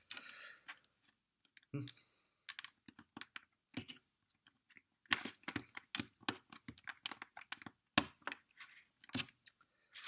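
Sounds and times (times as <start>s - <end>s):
plastic bricks clicking: 1.4s - 8.4s.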